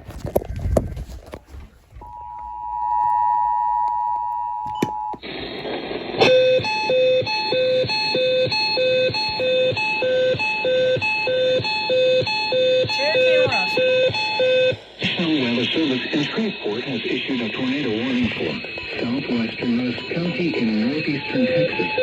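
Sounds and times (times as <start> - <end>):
radio hiss: 5.2 - 9.7, 12.9 - 14.0, 14.6 - 22.0
two-tone attention signal: 6.2 - 14.8
electronic alert beeps: 11.5 - 14.7.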